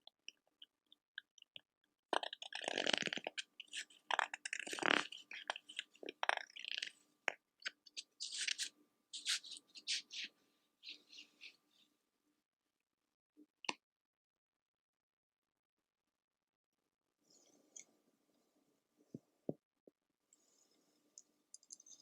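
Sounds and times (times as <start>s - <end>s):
close-miked crackling: 2.1s - 11.7s.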